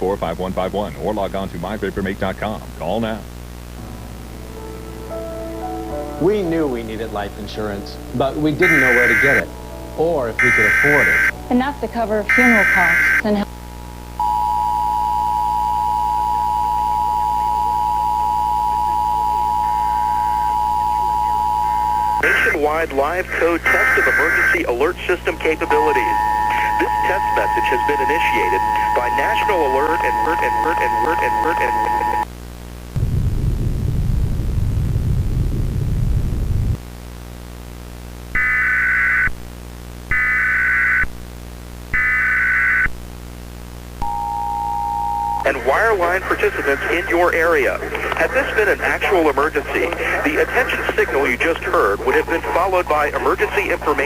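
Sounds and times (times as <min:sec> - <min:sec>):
harsh low static burst: 0:00.0 - 0:04.6, 0:06.2 - 0:14.2, 0:16.3 - 0:38.4, 0:43.0 - 0:54.0
steady electronic alert tone: 0:08.6 - 0:09.5, 0:10.4 - 0:11.5, 0:25.4 - 0:32.2, 0:44.0 - 0:46.0.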